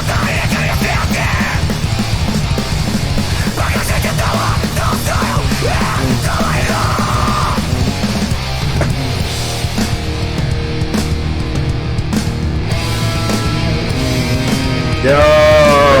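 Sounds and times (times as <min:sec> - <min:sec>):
harsh yelled vocals: 0:00.0 - 0:08.4, 0:12.8 - 0:16.0
heavy metal song: 0:00.0 - 0:16.0
pounding drums: 0:00.0 - 0:16.0.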